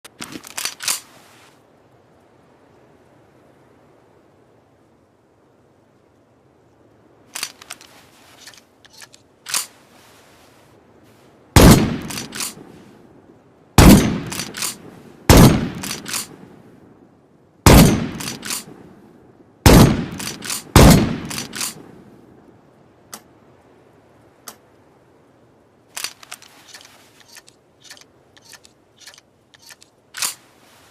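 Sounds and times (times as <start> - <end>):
shotgun shots: 11.6 - 12.6, 13.8 - 16.3, 17.7 - 18.7, 19.7 - 21.8.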